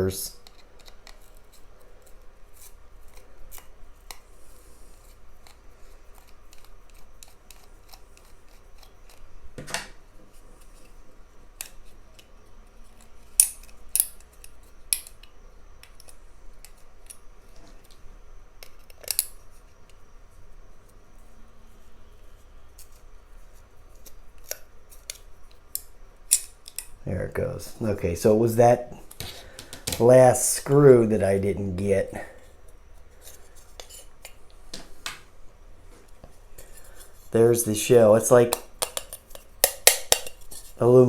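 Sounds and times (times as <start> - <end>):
hand tools clicking and scraping: 33.2 - 34.4.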